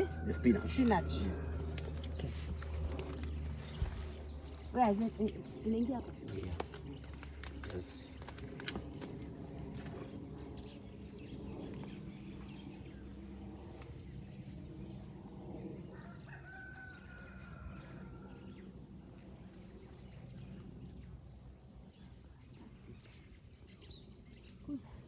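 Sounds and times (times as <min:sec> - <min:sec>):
faint rooster crowing: 0:00.0 - 0:02.2, 0:15.9 - 0:18.8.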